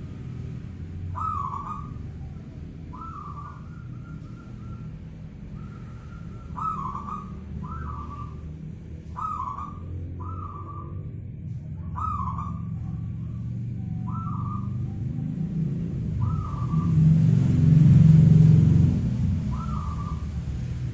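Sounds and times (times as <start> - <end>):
steady low rumble: 0.0 - 20.9
dove cooing: 1.1 - 11.0, 11.8 - 15.5, 19.3 - 20.5.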